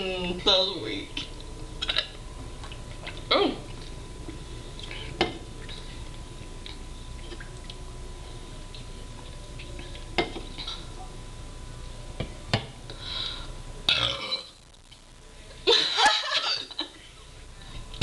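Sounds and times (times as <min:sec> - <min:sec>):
person burping: 0:03.3 - 0:03.7, 0:13.9 - 0:14.6.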